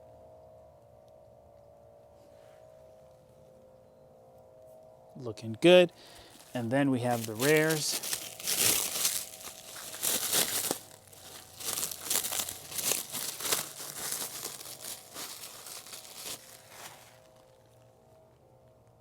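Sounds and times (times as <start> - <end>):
plastic packaging crinkling and tearing: 6.2 - 17.4.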